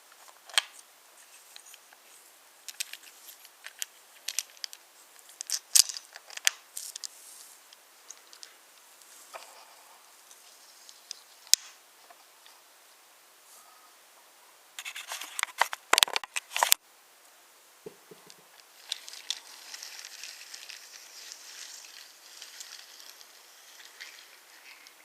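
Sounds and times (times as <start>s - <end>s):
wooden toy trains rattling on track: 2.7s - 7.2s, 18.2s - 25.0s.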